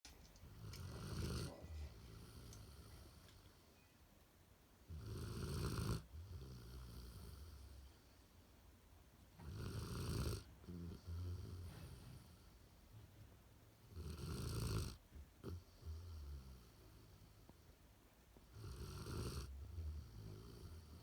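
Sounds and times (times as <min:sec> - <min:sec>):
dog snoring: 0:00.4 - 0:03.6, 0:04.8 - 0:08.0, 0:09.4 - 0:12.7, 0:13.8 - 0:17.5, 0:18.5 - 0:21.0
dog breathing softly: 0:10.6 - 0:12.8.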